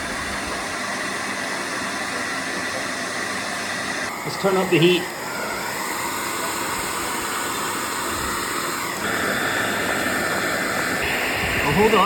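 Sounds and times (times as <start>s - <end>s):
hair dryer blowing: 0.0s - 12.0s.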